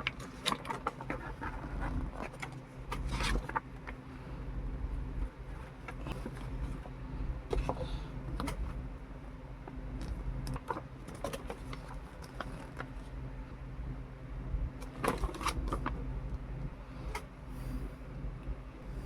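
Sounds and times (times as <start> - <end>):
packaging clicks and rustles: 0.0 - 4.0, 5.4 - 6.9, 9.9 - 13.1, 14.8 - 16.0
low hum: 0.0 - 19.0.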